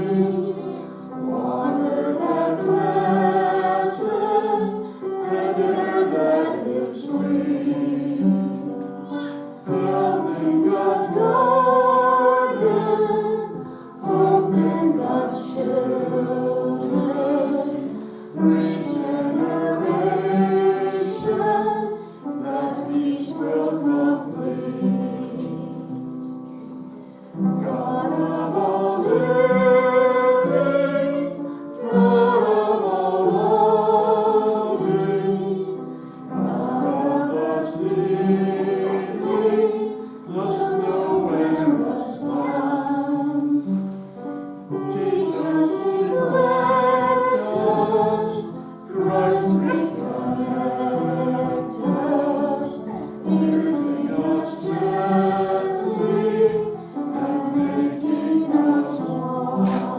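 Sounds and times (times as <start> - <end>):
group singing a hymn: 0.0 - 59.9.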